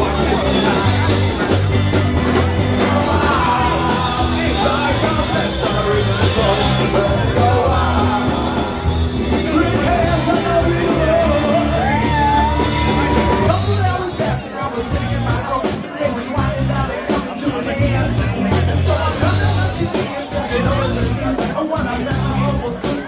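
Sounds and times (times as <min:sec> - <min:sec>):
bass guitar: 0:00.0 - 0:23.0
drums: 0:00.0 - 0:23.0
lead singer singing: 0:00.0 - 0:23.0
live rock band playing: 0:00.0 - 0:23.0.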